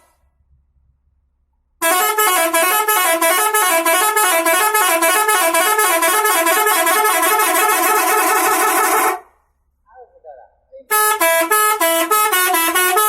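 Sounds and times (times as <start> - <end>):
musical bus horn playing tune: 1.8 - 9.4, 10.9 - 13.0.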